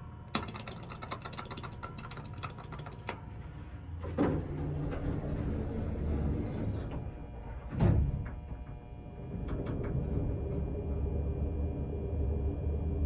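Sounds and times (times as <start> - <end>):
elevator low hum: 0.0 - 13.0
elevator rapid clicks: 0.3 - 3.2.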